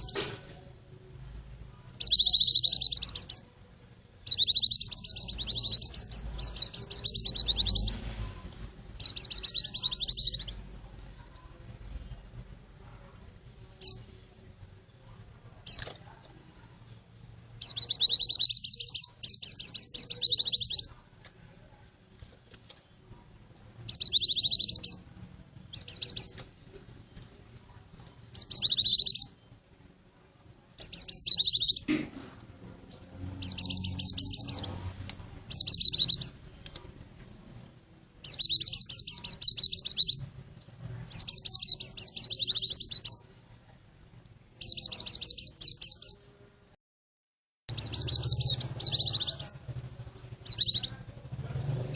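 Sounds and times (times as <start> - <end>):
bird chirping rapidly: 0.0 - 0.4, 2.0 - 3.5, 4.2 - 8.1, 8.9 - 10.6, 13.8 - 14.1, 15.6 - 15.9, 17.6 - 20.9, 23.8 - 25.0, 25.7 - 26.3, 28.3 - 29.4, 30.8 - 31.9, 33.3 - 34.8, 35.5 - 36.4, 38.2 - 40.2, 41.1 - 43.2, 44.6 - 46.2, 47.7 - 49.6, 50.4 - 51.0.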